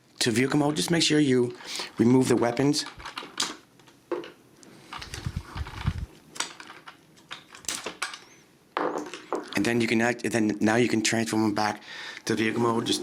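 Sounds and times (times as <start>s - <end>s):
plastic toy parts clicking: 2.5s - 8.4s.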